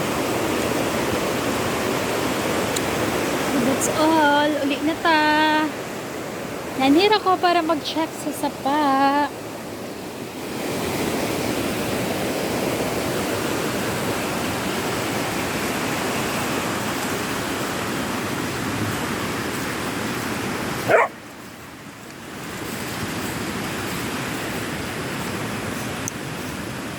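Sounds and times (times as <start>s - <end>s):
rushing creek water: 0.0s - 26.9s
dog barking: 20.8s - 21.2s.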